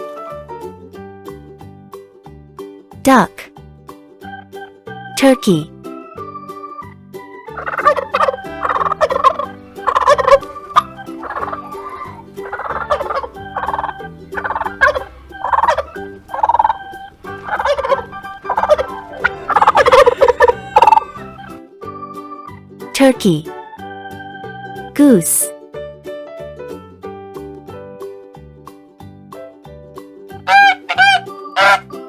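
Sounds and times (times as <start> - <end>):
faint steady background tones: 7.5 - 21.5
turkey gobbling: 7.5 - 21.5, 30.5 - 32.0.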